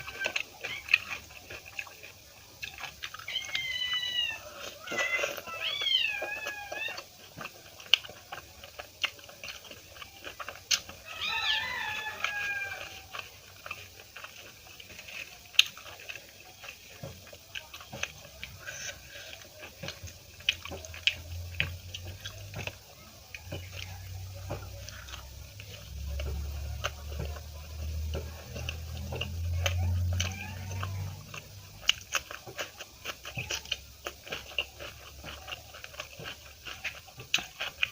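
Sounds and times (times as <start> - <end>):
cat meowing: 0.0 - 1.2, 3.2 - 7.1, 11.0 - 13.2, 29.6 - 31.3
person eating: 0.0 - 37.9.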